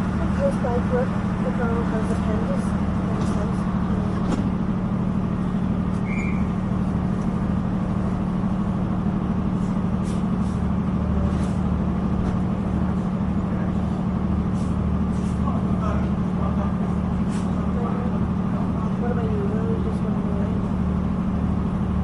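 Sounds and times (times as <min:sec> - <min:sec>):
train engine drone: 0:00.0 - 0:22.0.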